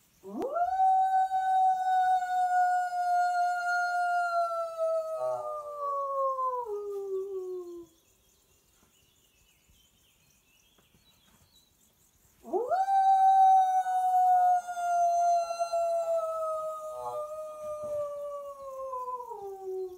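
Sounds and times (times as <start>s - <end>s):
person howling like a wolf: 0.3s - 7.9s, 12.4s - 19.9s.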